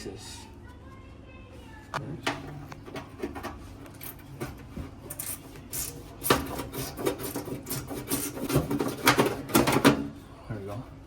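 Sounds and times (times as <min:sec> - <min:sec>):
tool clicking and scraping metal: 0:05.1 - 0:09.3.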